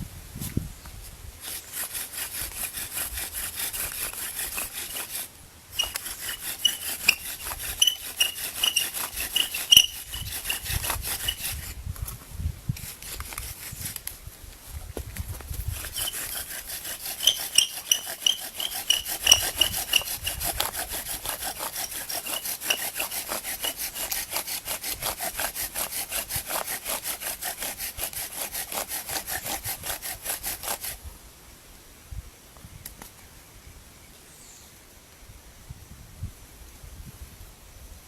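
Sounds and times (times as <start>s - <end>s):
wood rubbing against wood: 1.4s - 11.8s, 12.8s - 14.1s, 15.3s - 31.0s
brief squeak: 5.8s - 6.0s, 7.8s - 10.0s, 17.2s - 20.1s.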